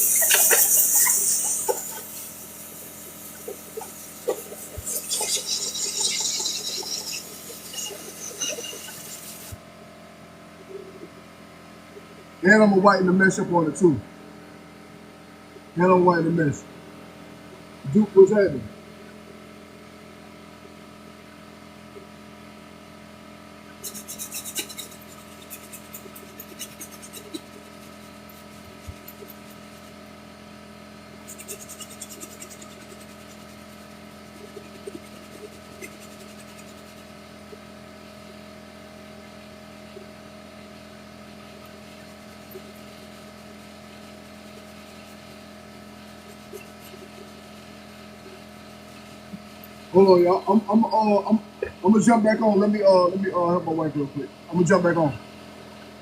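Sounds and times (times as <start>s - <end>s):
rapid scratchy rubbing: 0.0s - 9.6s, 23.8s - 30.0s, 31.2s - 37.6s, 40.8s - 50.4s
electrical hum: 0.0s - 56.0s.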